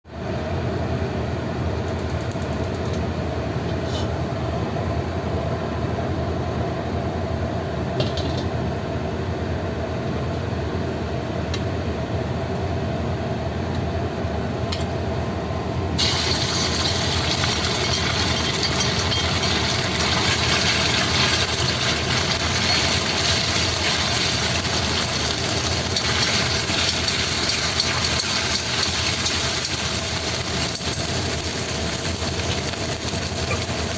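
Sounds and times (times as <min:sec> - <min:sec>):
meat sizzling in oil: 0:16.0 - 0:33.9.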